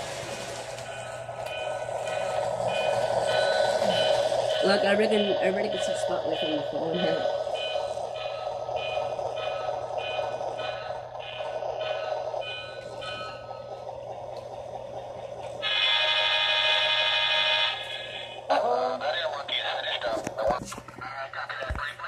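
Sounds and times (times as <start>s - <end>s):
model locomotive bell ringing: 0.0s - 13.9s
engine hum: 0.0s - 20.6s.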